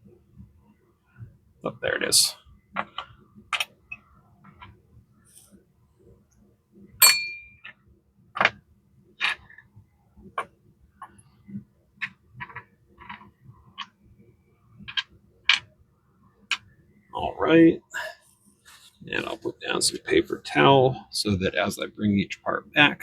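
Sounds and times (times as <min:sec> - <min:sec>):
ringing metal clink: 0:07.0 - 0:07.6.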